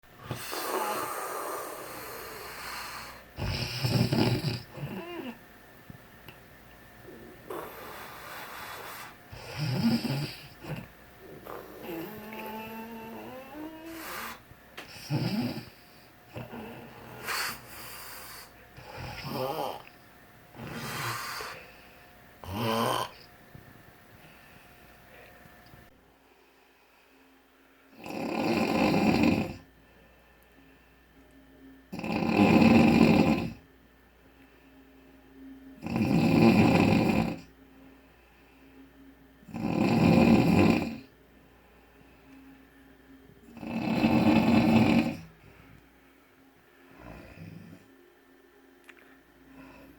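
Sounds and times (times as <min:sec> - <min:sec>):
faint breathing: 0:00.2 - 0:03.4, 0:07.0 - 0:19.9, 0:20.5 - 0:22.3, 0:24.1 - 0:25.6, 0:26.2 - 0:27.4, 0:29.8 - 0:31.2, 0:34.2 - 0:35.2, 0:37.8 - 0:39.0, 0:41.3 - 0:42.7, 0:45.3 - 0:48.0, 0:49.0 - 0:49.9
person snoring heavily: 0:00.2 - 0:05.4, 0:07.1 - 0:19.9, 0:20.6 - 0:21.8, 0:22.4 - 0:23.3, 0:27.9 - 0:29.7, 0:31.9 - 0:33.6, 0:35.8 - 0:37.5, 0:39.5 - 0:41.1, 0:43.5 - 0:45.3
breathy inhale: 0:07.1 - 0:09.7, 0:15.7 - 0:19.4, 0:20.6 - 0:22.2, 0:37.9 - 0:39.0, 0:49.5 - 0:49.9.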